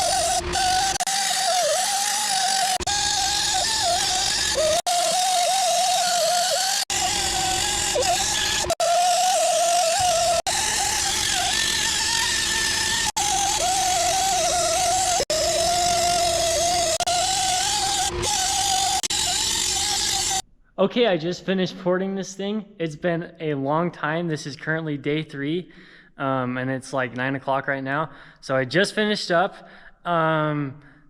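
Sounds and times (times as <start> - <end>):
rotary grinder whining on metal: 0.0 - 20.4.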